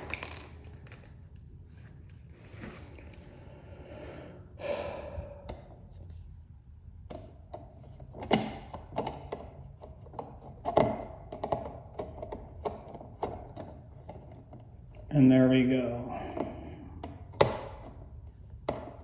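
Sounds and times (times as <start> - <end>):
tools tapping on wall outlet: 0.0 - 1.0.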